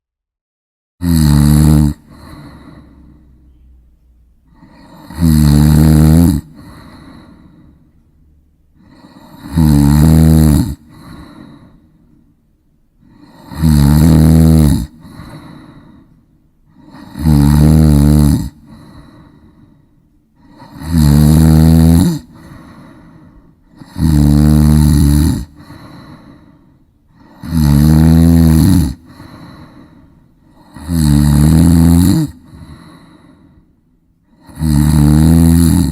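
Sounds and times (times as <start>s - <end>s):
loud snoring: 1.0s - 3.4s, 4.5s - 7.6s, 8.8s - 11.8s, 13.0s - 16.0s, 16.7s - 19.5s, 20.4s - 33.4s, 34.2s - 35.9s
soft breathing: 2.1s - 5.1s, 6.5s - 9.4s, 10.8s - 13.5s, 14.9s - 17.1s, 18.6s - 20.8s, 22.2s - 23.9s, 25.4s - 27.5s, 29.0s - 30.8s, 32.4s - 34.5s.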